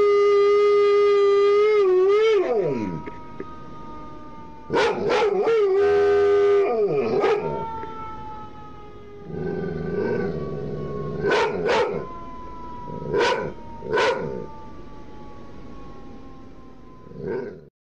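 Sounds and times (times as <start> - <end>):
fire truck siren wailing: 0.0 - 17.7
dog howling: 1.2 - 3.2, 4.7 - 7.8, 9.2 - 12.1, 12.9 - 14.5.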